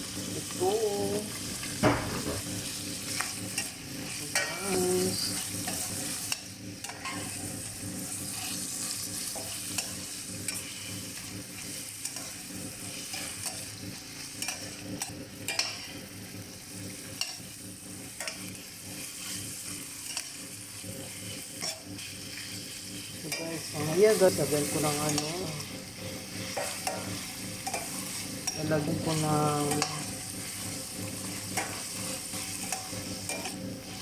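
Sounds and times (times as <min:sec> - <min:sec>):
chicken sizzling in a pan: 0:00.0 - 0:34.0
utensil scraping and clacking: 0:14.4 - 0:15.9, 0:21.3 - 0:22.0, 0:23.2 - 0:28.9, 0:29.6 - 0:34.0.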